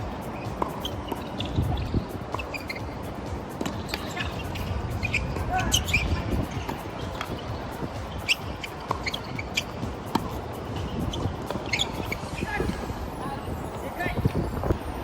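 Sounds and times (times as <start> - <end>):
tennis ball hit and bouncing: 0.2 - 12.2
wind buffeting microphone: 1.0 - 15.0.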